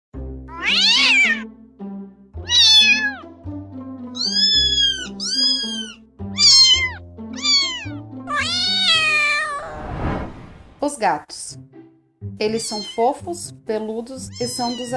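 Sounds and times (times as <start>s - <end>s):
background music: 0.2s - 9.6s, 10.4s - 14.9s
cat meowing: 0.5s - 1.4s, 2.4s - 3.3s, 4.2s - 9.8s, 12.6s - 13.1s, 14.2s - 14.9s.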